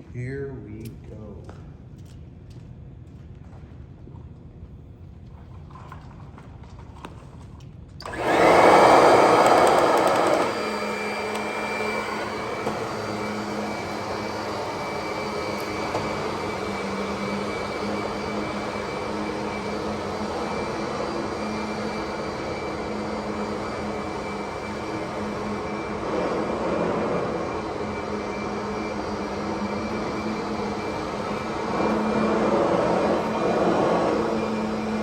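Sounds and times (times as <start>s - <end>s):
upright vacuum cleaner running: 8.0s - 35.0s.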